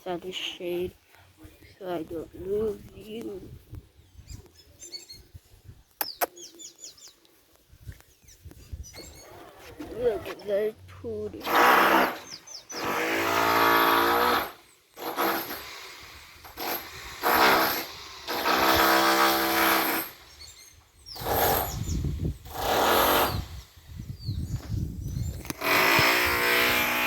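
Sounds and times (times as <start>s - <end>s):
motor engine running in bursts: 11.4s - 20.3s, 25.6s - 27.0s.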